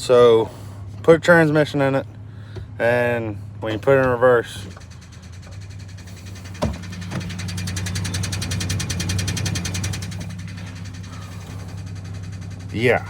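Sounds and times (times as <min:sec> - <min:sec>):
truck engine idling: 0:00.0 - 0:13.0
transmission clunk: 0:02.0 - 0:13.0
rapid ticking rattle: 0:03.7 - 0:13.0.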